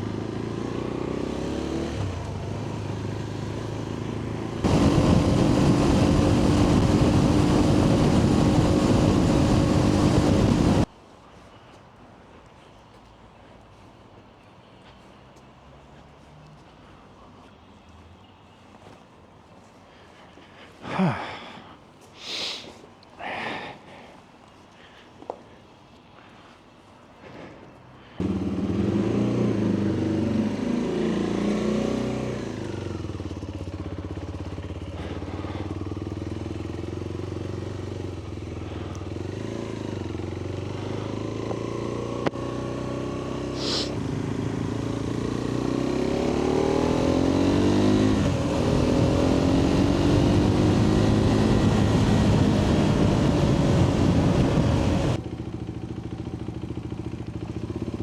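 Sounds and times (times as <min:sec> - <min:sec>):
motorcycle engine revving: 0:00.0 - 0:10.9, 0:28.2 - 0:58.0.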